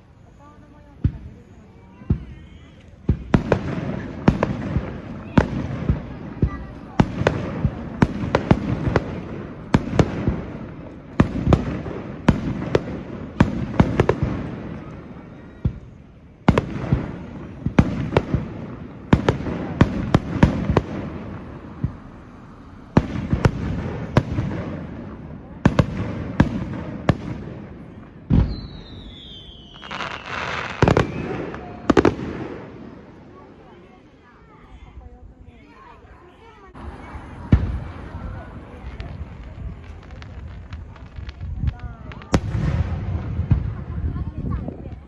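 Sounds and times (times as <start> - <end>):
fireworks crackling: 0.0 - 45.0
fireworks bangs with rumble: 0.4 - 33.7, 36.7 - 45.0
falling whistle: 28.5 - 30.4.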